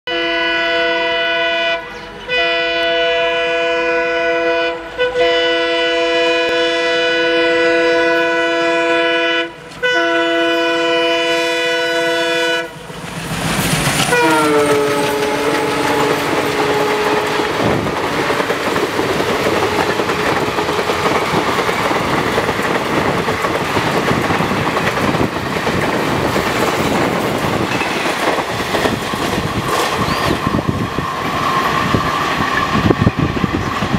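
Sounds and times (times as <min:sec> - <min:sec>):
locomotive horn blasts: 0:00.1 - 0:12.9, 0:14.1 - 0:17.9
train coaches running past: 0:00.1 - 0:33.9.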